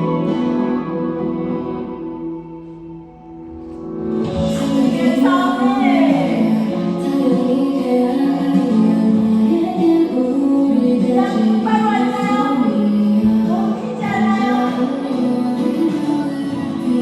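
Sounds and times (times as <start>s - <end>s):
woman singing slow melody: 4.5s - 17.0s.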